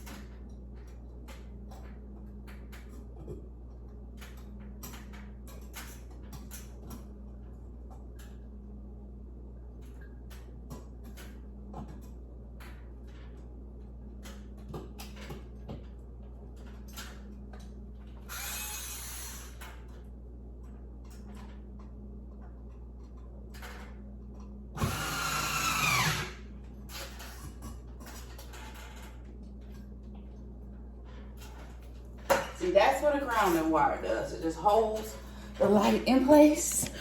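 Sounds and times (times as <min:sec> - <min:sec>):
steady low hum: 0:00.0 - 0:37.0
power drill whining: 0:24.8 - 0:26.4.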